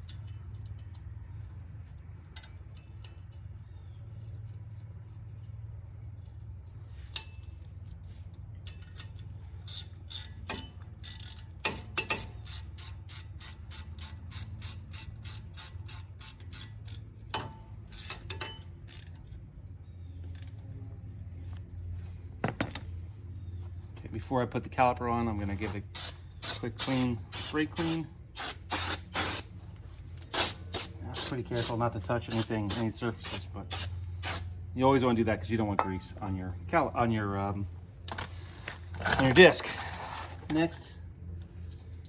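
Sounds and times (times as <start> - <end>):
hand ratchet clicking: 8.7 - 19.4, 20.3 - 20.6, 25.8 - 29.5, 30.4 - 34.5.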